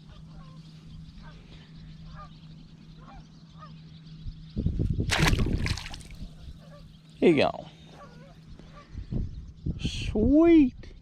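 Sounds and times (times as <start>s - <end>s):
distant geese honking: 0.0s - 4.2s, 6.2s - 7.1s
steady low hum: 0.0s - 9.8s.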